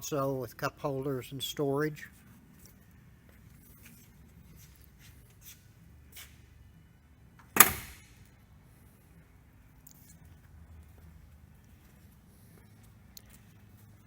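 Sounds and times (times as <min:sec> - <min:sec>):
car door shutting: 0:07.5 - 0:08.1.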